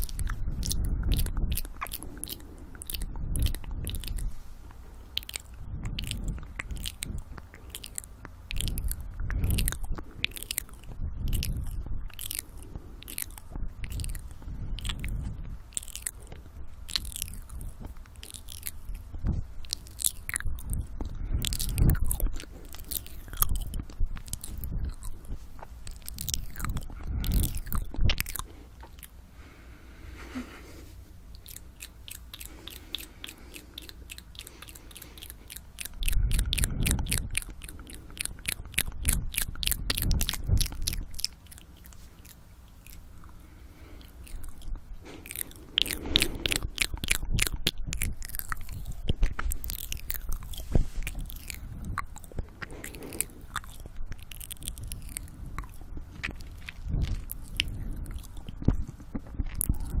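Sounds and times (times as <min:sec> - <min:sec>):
heavy breathing: 0:00.0 - 0:05.0, 0:26.2 - 0:38.4, 0:43.1 - 1:00.0
wet lip and tongue clicks: 0:00.0 - 0:29.2, 0:31.3 - 1:00.0.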